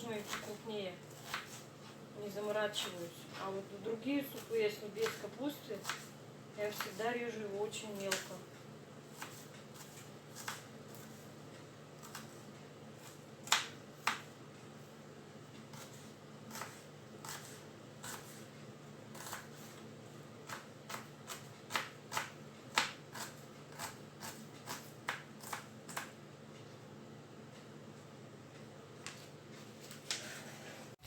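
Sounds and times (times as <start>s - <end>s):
knife chopping on cutting board: 0.2s - 1.7s, 5.8s - 6.1s, 9.1s - 11.2s, 12.0s - 12.4s, 13.0s - 14.3s, 15.7s - 18.4s, 19.1s - 19.8s, 20.4s - 26.1s.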